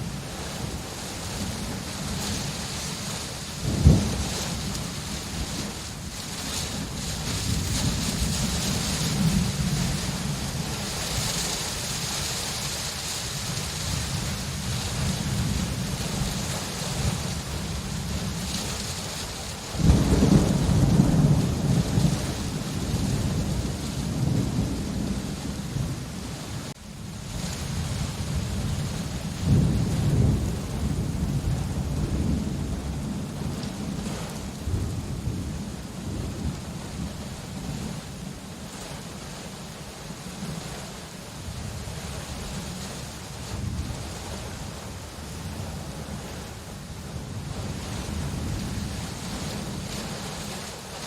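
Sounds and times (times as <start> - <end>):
steady rain: 0.0 - 51.0
thunderclap: 3.6 - 5.7, 19.8 - 26.1
loud rumble of thunder: 3.6 - 12.2, 19.7 - 38.2.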